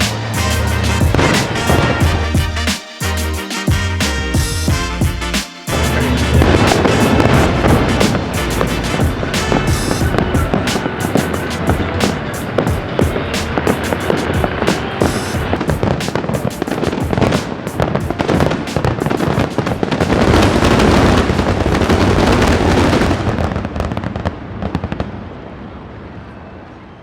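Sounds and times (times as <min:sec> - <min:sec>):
fireworks bangs and crackling: 0:00.0 - 0:26.2.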